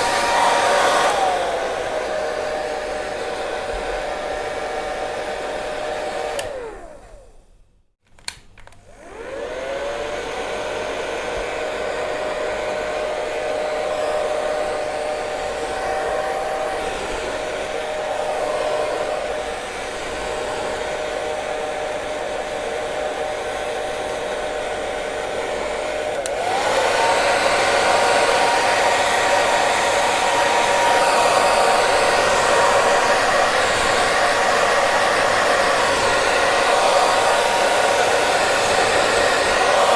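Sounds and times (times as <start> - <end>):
hair dryer whining: 0.0 - 7.6, 8.3 - 39.9
hair dryer switch click: 6.2 - 7.2, 8.2 - 8.8, 26.0 - 26.8.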